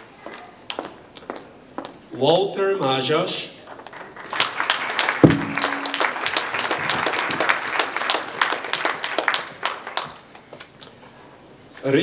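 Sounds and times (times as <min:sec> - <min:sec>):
audience applauding: 0:04.2 - 0:10.1
single thump: 0:05.2 - 0:06.2.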